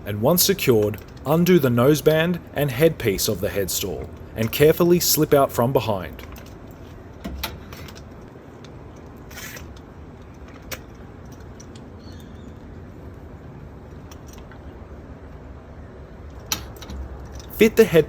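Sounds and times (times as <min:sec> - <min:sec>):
halter buckle clinking: 0:06.0 - 0:12.7.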